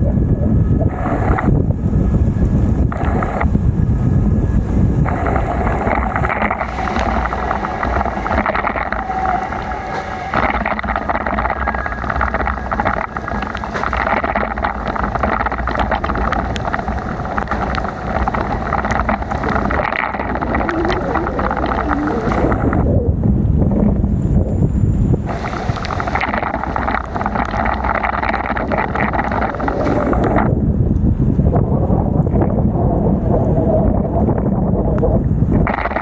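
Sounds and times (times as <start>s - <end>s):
tyre and road noise: 0.0s - 36.0s
wind buffeting microphone: 0.0s - 36.0s
fine crackling: 5.0s - 22.9s, 25.2s - 30.5s.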